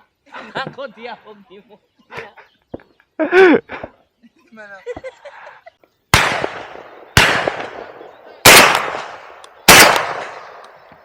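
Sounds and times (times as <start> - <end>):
shotgun shots: 6.1 - 11.0.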